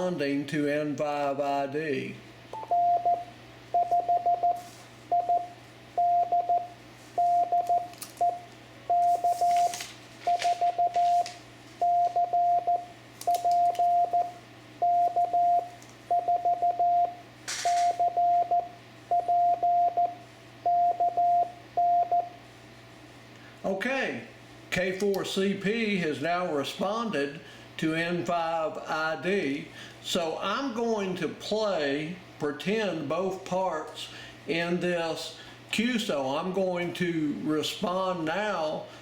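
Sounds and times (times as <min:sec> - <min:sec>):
low steady hum: 0:00.0 - 0:39.0
morse code tone: 0:02.6 - 0:09.7, 0:10.3 - 0:22.4.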